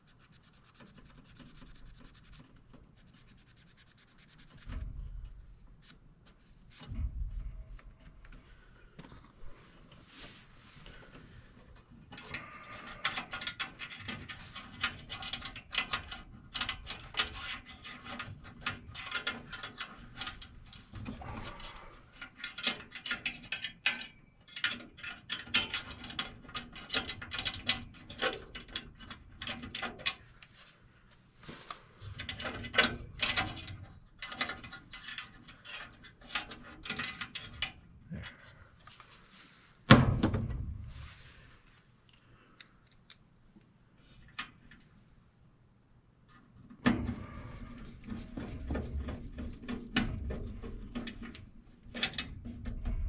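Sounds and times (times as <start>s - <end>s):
metallic clicking and rattling: 13.0s - 30.2s, 48.3s - 53.0s.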